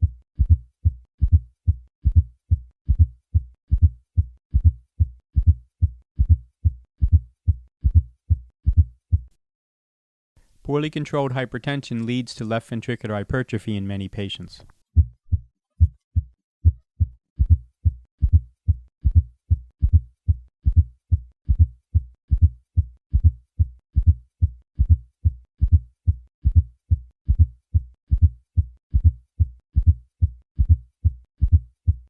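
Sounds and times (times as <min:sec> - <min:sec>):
heartbeat thuds: 0:00.0 - 0:09.3, 0:15.0 - 0:32.0.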